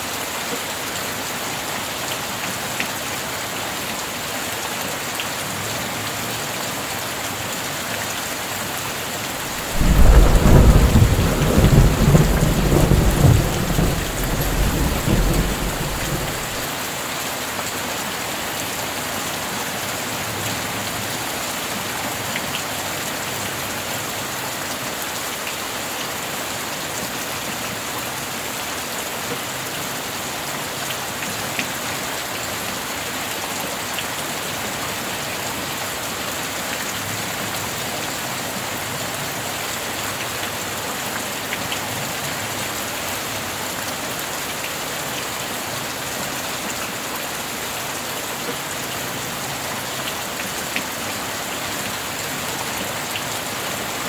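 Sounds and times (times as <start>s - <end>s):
steady rain hiss: 8.6s - 16.9s
raindrops ticking: 9.5s - 16.6s.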